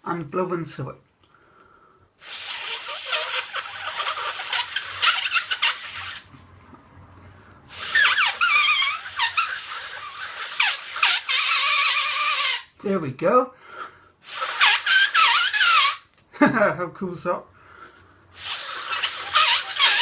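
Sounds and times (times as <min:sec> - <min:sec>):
rushing breath: 0:01.2 - 0:05.0, 0:17.5 - 0:19.4
paper noise maker squealing: 0:02.2 - 0:06.3, 0:07.7 - 0:12.7, 0:14.3 - 0:16.0, 0:18.4 - 0:20.0.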